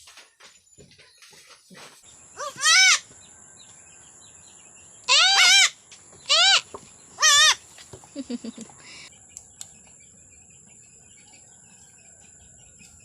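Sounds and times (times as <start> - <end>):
goat kids bleating: 2.4 - 3.1, 5.1 - 7.6.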